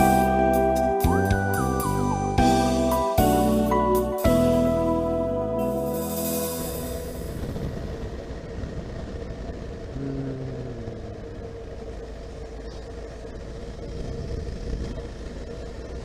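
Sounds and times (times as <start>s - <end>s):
motorcycle engine running: 0.0s - 16.0s
road noise: 0.0s - 16.0s.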